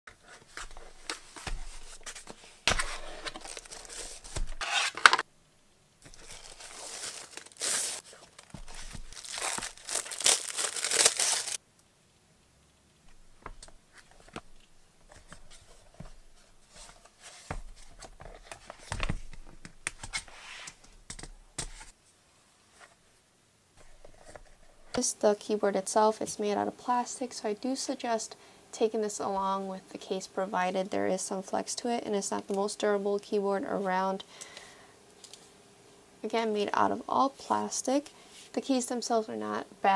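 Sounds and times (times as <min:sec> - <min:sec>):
packaging tearing and rustling: 0:00.4 - 0:05.2, 0:06.0 - 0:11.6.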